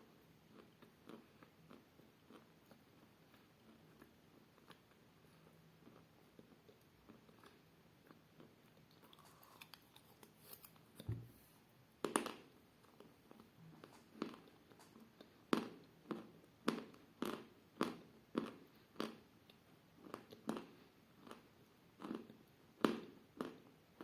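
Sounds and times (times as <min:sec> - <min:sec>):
chalk crunching while chewed: 0:00.5 - 0:10.9
soft thump: 0:11.0 - 0:11.5.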